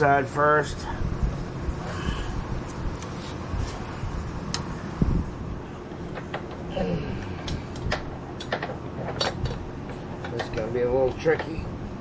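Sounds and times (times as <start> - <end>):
low hum: 0.0 - 10.3
metal clicks and knocks: 6.0 - 6.7, 7.4 - 11.6.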